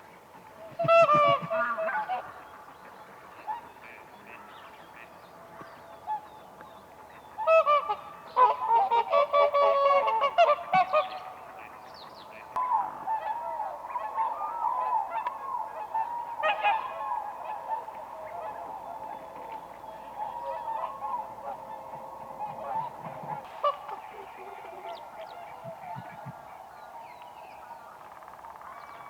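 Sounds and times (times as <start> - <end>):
swans honking: 7.4 - 26.2.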